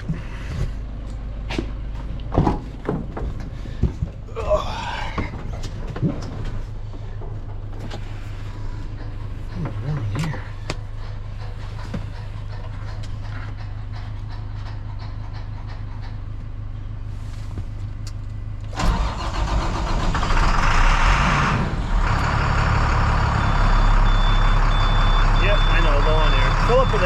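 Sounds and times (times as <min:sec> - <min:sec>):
tractor idling: 0:00.0 - 0:27.0
truck engine cranking and starting: 0:18.0 - 0:27.0
high warning beeps: 0:23.4 - 0:27.0.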